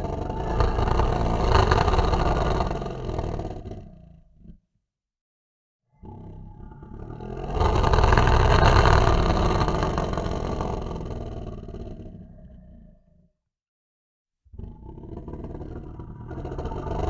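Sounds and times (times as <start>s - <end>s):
low rough human vocal sound: 0.0s - 3.4s, 6.0s - 11.7s.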